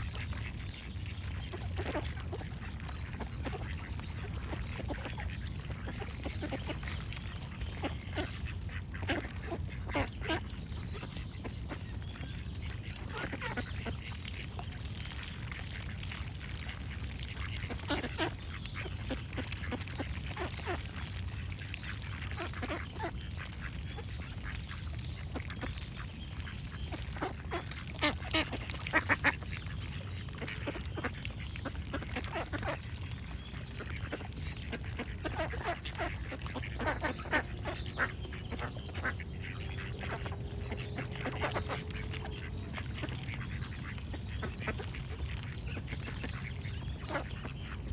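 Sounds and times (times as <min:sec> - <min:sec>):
ducks quacking: 0:00.0 - 0:14.7, 0:16.8 - 0:47.9
birds singing: 0:00.0 - 0:14.8, 0:16.9 - 0:47.9
low rumble: 0:36.1 - 0:45.2.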